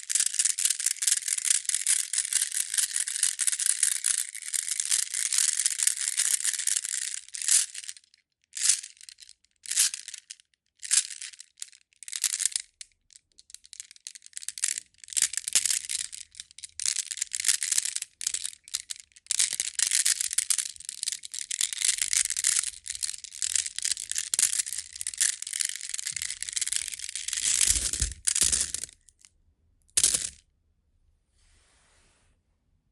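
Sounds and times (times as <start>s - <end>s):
stones rattling and grinding: 21.6s - 28.9s.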